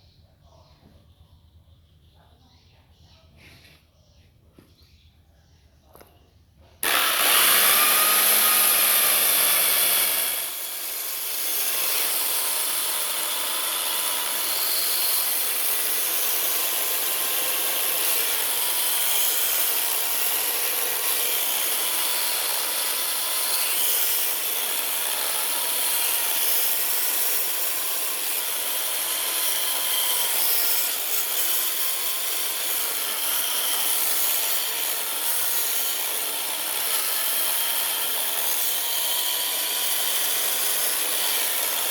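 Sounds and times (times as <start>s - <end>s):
power tool grinding wood: 6.8s - 41.9s.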